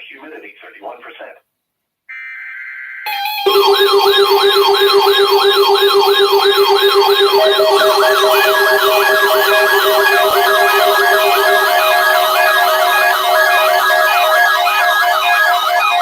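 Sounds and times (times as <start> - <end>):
electronic siren yelping: 3.1 - 16.0
second yelping siren: 3.1 - 16.0
pulsed beeping tones: 3.5 - 16.0.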